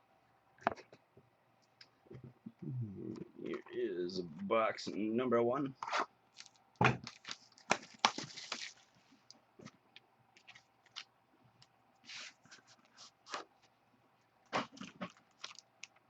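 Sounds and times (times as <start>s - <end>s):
wrapping crinkling and tearing: 6.4s - 9.3s, 10.4s - 11.1s, 14.6s - 16.0s.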